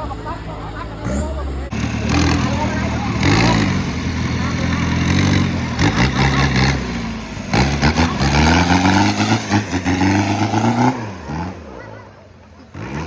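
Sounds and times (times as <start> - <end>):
off-road vehicle engine revving: 0.0 - 13.0.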